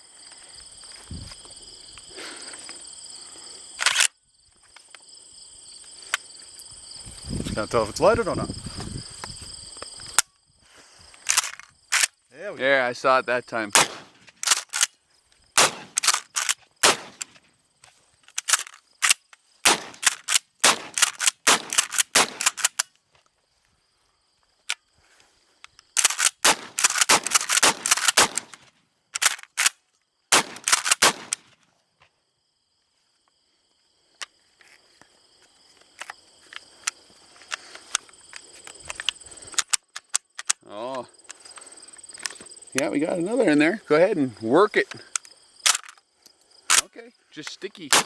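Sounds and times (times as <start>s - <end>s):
sharp gunshots: 13.7s - 14.2s, 15.6s - 16.2s, 16.8s - 17.3s, 19.6s - 22.6s, 26.4s - 28.6s, 30.3s - 31.4s.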